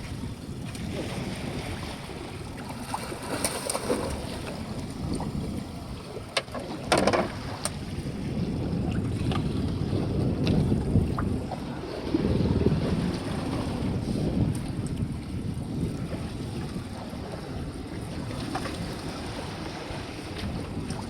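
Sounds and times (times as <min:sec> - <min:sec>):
wind buffeting microphone: 0:00.0 - 0:21.0
water sloshing: 0:00.7 - 0:07.8
splash: 0:02.8 - 0:04.4.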